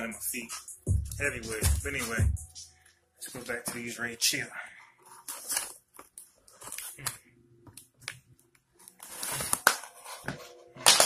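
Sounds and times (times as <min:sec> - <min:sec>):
packaging rustling and crinkling: 0:03.2 - 0:11.0
packaging tearing: 0:05.0 - 0:07.2, 0:08.8 - 0:11.0.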